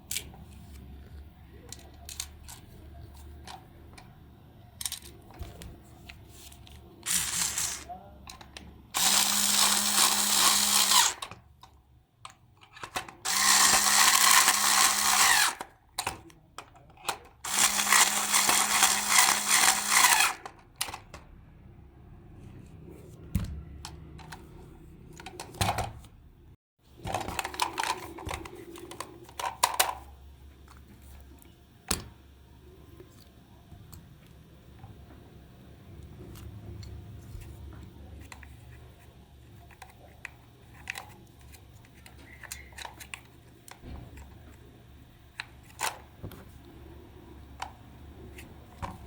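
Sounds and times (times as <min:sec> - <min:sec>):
small power tool whirring: 0:07.0 - 0:07.9, 0:09.0 - 0:11.4, 0:13.2 - 0:15.7, 0:17.4 - 0:21.0.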